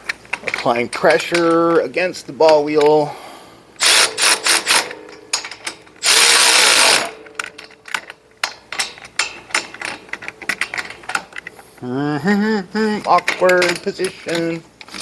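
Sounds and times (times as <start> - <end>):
power ratchet whirring: 3.8 - 7.5
ratchet clicks: 3.8 - 11.5
metal parts clicking: 3.8 - 11.6, 13.0 - 15.0.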